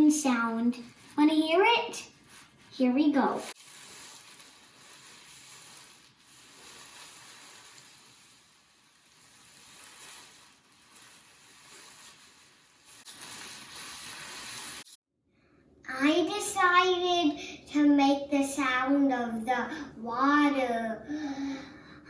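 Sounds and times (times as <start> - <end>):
tissue paper rubbing and crinkling: 0.0 - 15.0.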